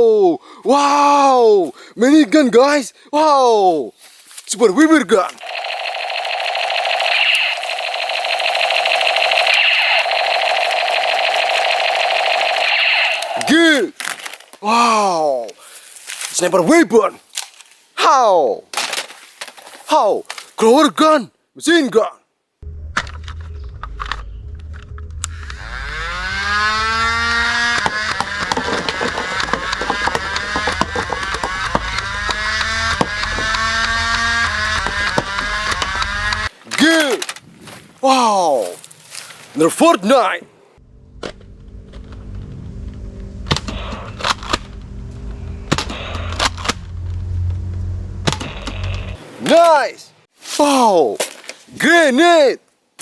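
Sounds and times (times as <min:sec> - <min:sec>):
electronic rumble with held tones: 0:05.4 - 0:13.5, 0:22.6 - 0:36.5, 0:40.8 - 0:49.2
toy gun clicking and rattling: 0:05.4 - 0:13.5
toy gun motor whine: 0:05.4 - 0:13.5, 0:25.2 - 0:36.5.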